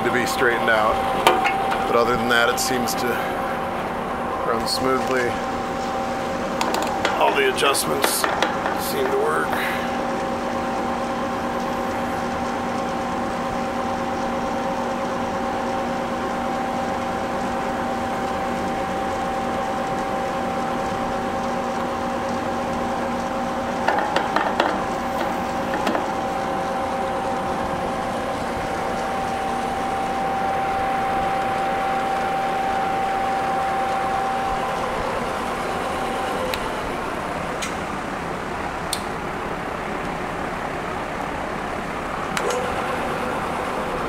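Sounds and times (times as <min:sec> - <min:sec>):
sharp clicks and clanks of controls: 0:00.0 - 0:05.5, 0:06.5 - 0:13.0, 0:17.4 - 0:30.0, 0:32.1 - 0:38.0, 0:38.8 - 0:39.2, 0:42.2 - 0:44.0
bench lathe humming: 0:00.0 - 0:44.0.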